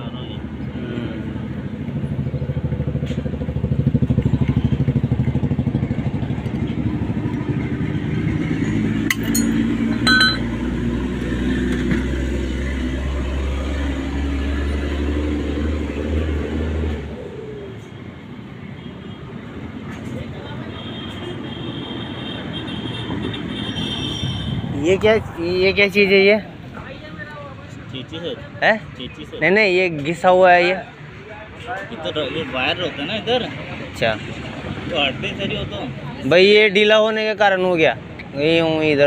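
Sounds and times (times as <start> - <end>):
motorcycle engine running: 2.1 - 8.5.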